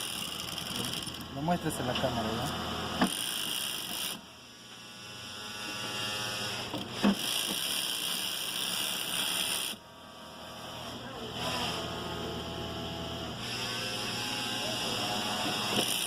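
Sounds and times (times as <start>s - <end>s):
sewing machine running: 0.0s - 1.2s.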